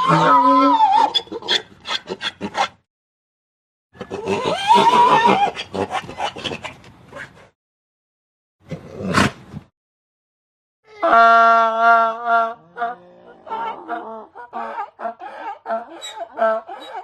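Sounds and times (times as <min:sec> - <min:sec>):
donkey braying: 0:00.0 - 0:02.7, 0:04.0 - 0:06.8, 0:10.9 - 0:17.0.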